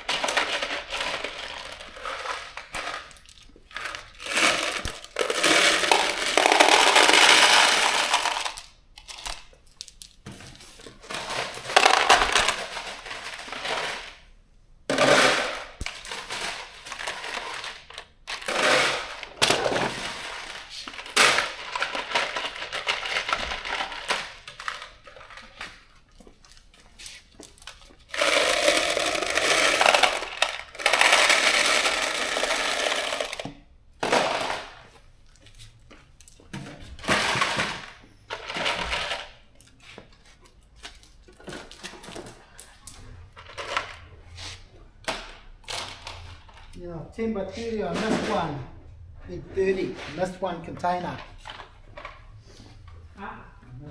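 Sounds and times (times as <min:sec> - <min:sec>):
steel bolts rattling and clinking: 0:00.0 - 0:14.3, 0:15.0 - 0:30.3.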